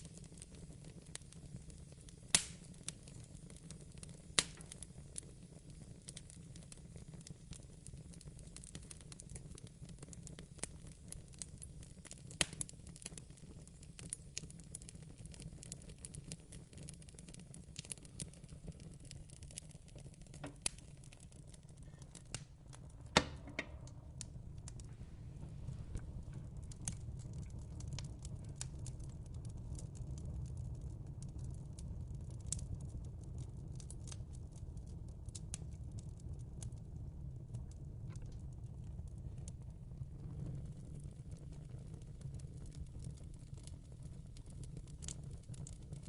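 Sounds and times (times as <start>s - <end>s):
wood fire crackling: 0.0s - 46.0s
low steady rumble: 19.7s - 33.1s.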